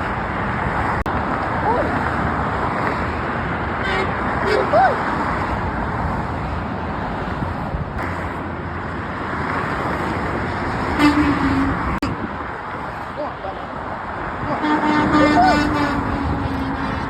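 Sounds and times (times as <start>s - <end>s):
freeway traffic noise: 0.0s - 17.0s
truck horn blast: 3.8s - 4.7s, 10.9s - 12.2s, 14.4s - 17.0s.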